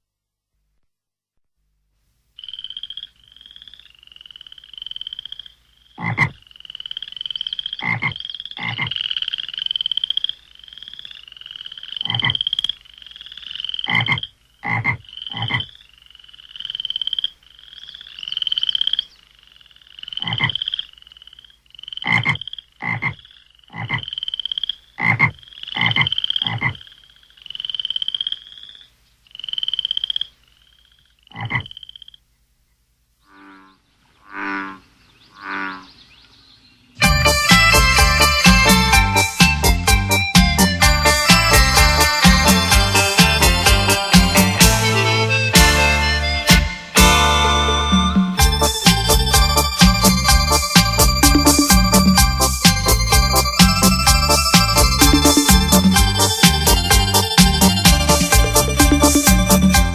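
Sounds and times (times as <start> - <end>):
high chirping electronic calls: 33.4 - 59.9.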